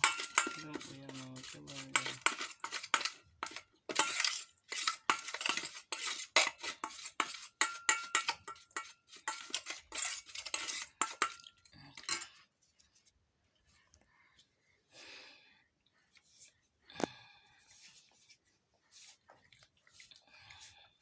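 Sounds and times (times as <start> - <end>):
utensils clinking against a dish: 0.0 - 12.4.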